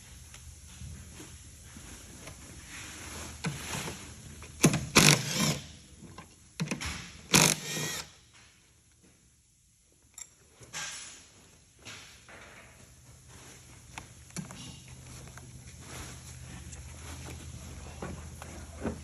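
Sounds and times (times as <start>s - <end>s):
handheld power tool whirring: 4.6s - 5.7s, 7.3s - 8.1s.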